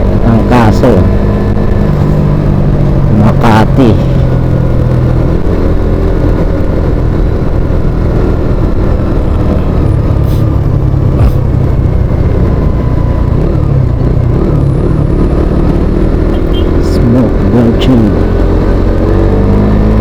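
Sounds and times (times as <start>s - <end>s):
road noise: 0.0s - 20.0s
vehicle engine running: 0.0s - 20.0s.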